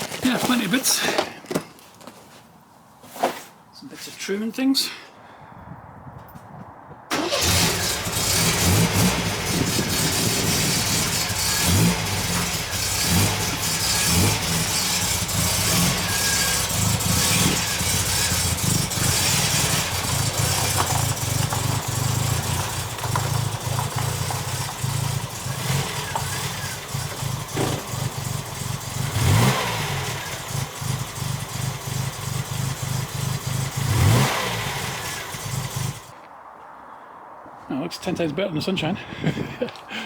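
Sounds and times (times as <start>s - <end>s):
car engine running: 7.1s - 36.1s
engine throttle blips: 7.1s - 36.1s.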